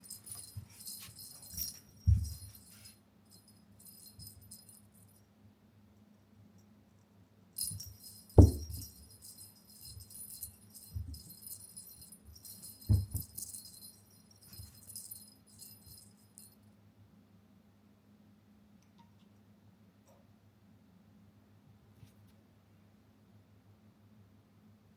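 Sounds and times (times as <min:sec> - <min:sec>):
small bell jingling: 0:00.0 - 0:05.2, 0:07.6 - 0:16.6
dull thumps: 0:07.7 - 0:09.2, 0:12.7 - 0:13.6.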